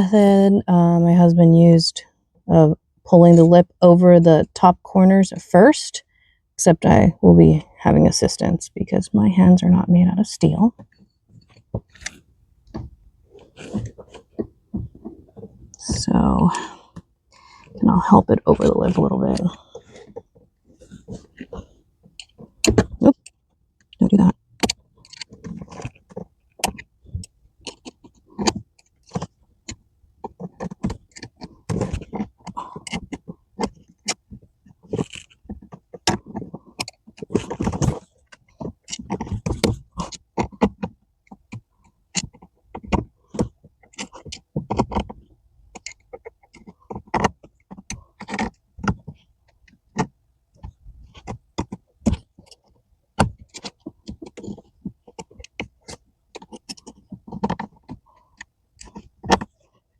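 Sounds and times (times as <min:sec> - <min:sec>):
handling rustling: 0:10.8 - 0:15.9
clicks and scrapes of pedal cover: 0:24.6 - 0:59.7.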